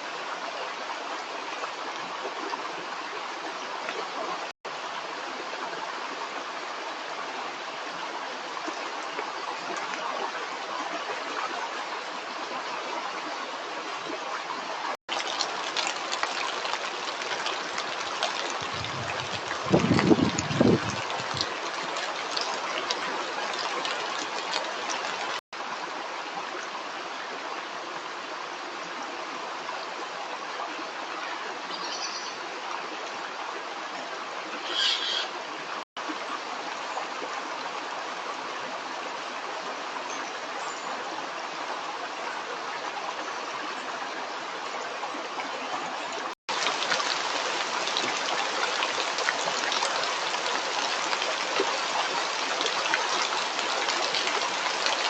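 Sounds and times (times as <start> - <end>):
stream water rushing: 0.0 - 55.0.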